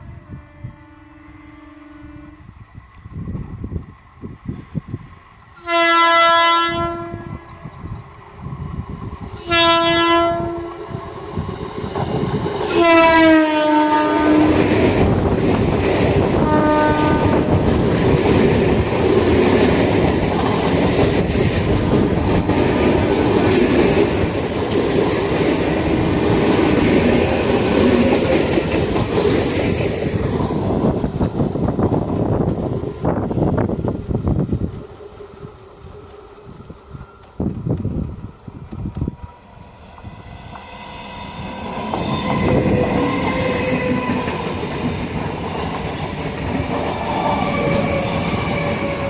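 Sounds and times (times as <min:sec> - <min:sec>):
train horn blasts: 0:00.0 - 0:02.7, 0:05.6 - 0:07.7, 0:09.4 - 0:11.0, 0:12.7 - 0:14.7, 0:16.4 - 0:17.6
train rumbling past: 0:00.0 - 0:49.0.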